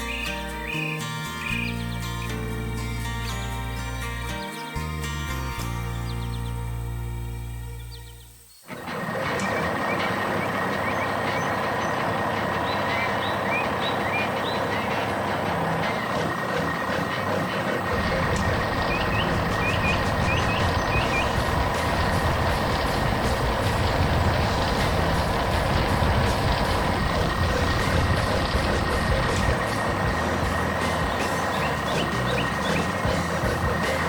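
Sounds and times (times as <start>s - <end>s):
heavy truck engine running: 0.0s - 6.9s, 7.9s - 34.0s
birds chirping: 0.0s - 34.0s
steady high-pitched tone: 17.9s - 34.0s.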